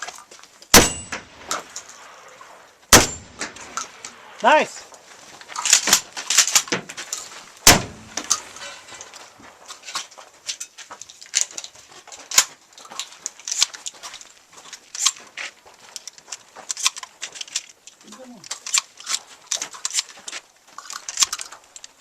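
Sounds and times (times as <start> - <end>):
shotgun shot: 0.7 - 1.6, 2.9 - 3.8, 7.6 - 8.3
metallic clicks of shotgun handling: 5.6 - 6.8, 9.8 - 15.2, 15.9 - 22.0.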